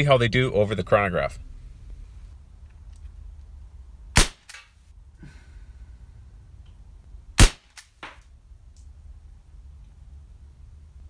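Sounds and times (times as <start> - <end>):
airsoft pistol shot crack: 4.2 - 4.7, 7.4 - 8.2.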